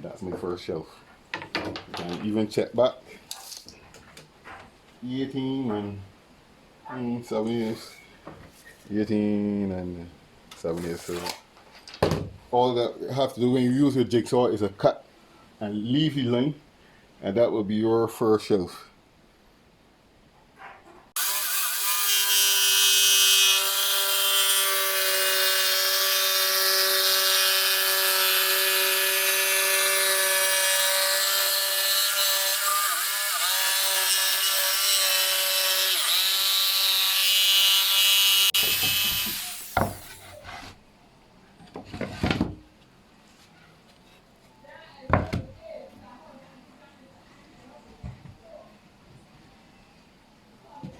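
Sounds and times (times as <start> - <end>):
electric jigsaw cutting plywood: 21.2 - 40.1.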